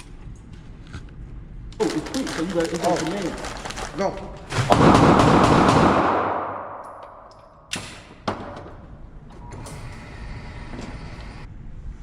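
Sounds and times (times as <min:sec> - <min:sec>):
muffled pistol shots: 0:04.6 - 0:07.3.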